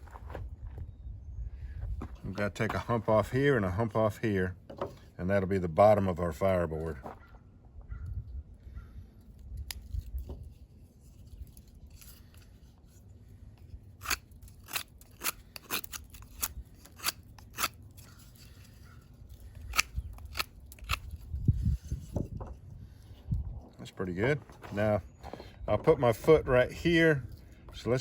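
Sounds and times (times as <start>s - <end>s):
knife cutting into wood: 14.0s - 22.5s.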